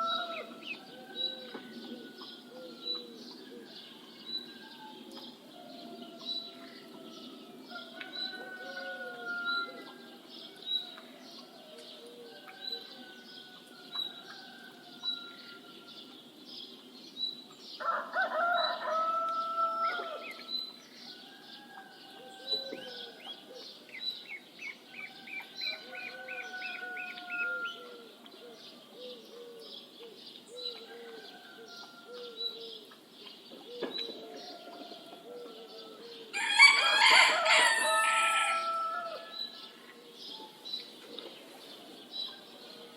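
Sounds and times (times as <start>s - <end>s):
rooster crowing: 0.0s - 3.0s, 5.6s - 10.2s, 17.8s - 20.4s, 25.0s - 28.1s, 34.4s - 39.8s
harsh crowing call: 36.3s - 39.3s.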